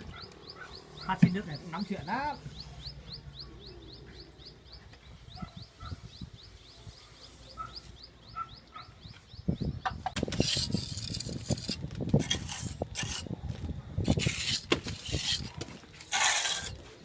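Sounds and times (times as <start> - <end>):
faint high chirping: 0.0 - 10.2
trowel scraping render on wall: 10.1 - 13.4, 14.0 - 17.0.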